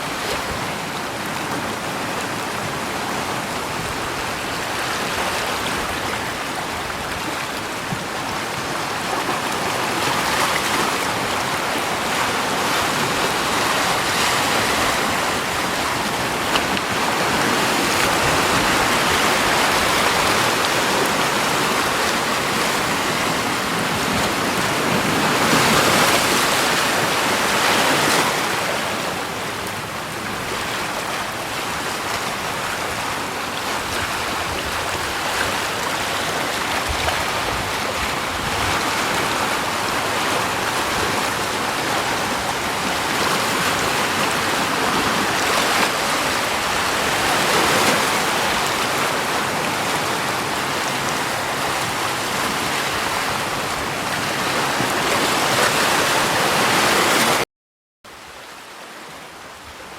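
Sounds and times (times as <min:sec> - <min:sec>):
rushing water: 0:00.0 - 0:57.4, 0:58.1 - 0:59.9.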